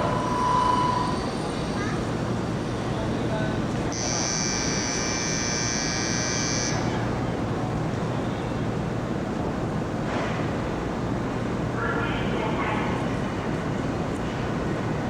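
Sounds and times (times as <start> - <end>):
electric departure bell buzzing: 3.9 - 6.9.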